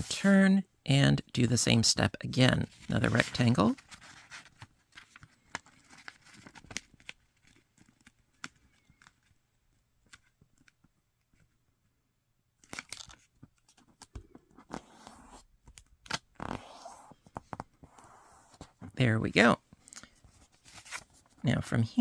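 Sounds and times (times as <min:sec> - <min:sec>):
paper folding and creasing: 0:02.6 - 0:11.6, 0:12.6 - 0:18.9, 0:20.0 - 0:21.4.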